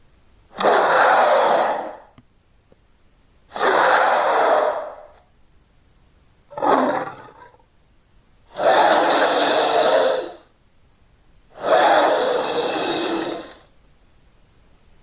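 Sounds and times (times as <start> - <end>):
monster roars: 0.6 - 2.1, 3.5 - 5.1, 6.5 - 7.6, 8.5 - 10.4, 11.6 - 13.7.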